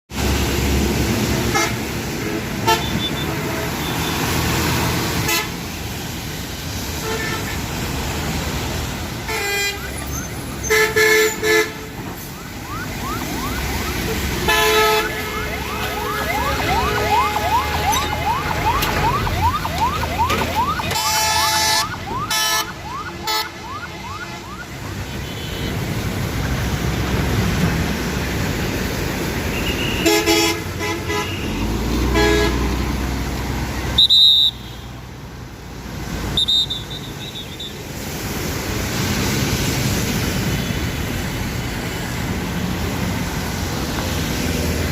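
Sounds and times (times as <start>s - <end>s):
road and engine noise: 0.0s - 44.9s
vehicle horns honking: 1.5s - 4.3s, 5.2s - 5.6s, 7.0s - 7.6s, 9.3s - 12.0s, 14.4s - 18.0s, 20.9s - 25.8s, 29.5s - 32.7s.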